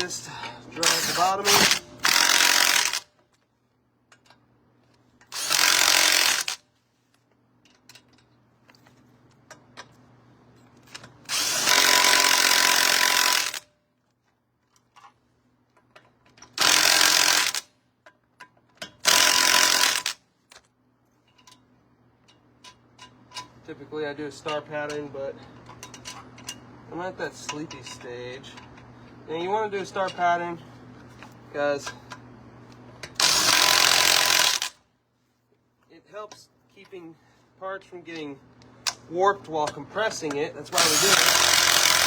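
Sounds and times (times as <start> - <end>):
impact wrench spinning: 0.8 - 3.1, 5.3 - 6.6, 11.3 - 13.6, 16.6 - 17.7, 19.0 - 20.2, 33.1 - 34.8, 40.8 - 42.0.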